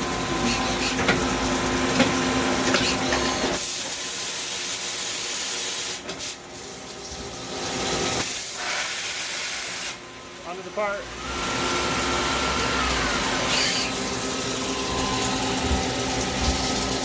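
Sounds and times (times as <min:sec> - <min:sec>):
machine hum: 0:00.0 - 0:03.8, 0:10.0 - 0:17.0
coolant spray hissing: 0:07.6 - 0:10.0.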